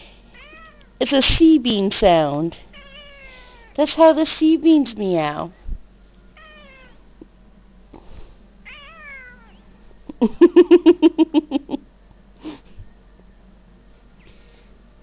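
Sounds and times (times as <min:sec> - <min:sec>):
cat meowing: 0:00.4 - 0:00.9, 0:02.7 - 0:03.8, 0:06.4 - 0:07.0, 0:08.6 - 0:09.6.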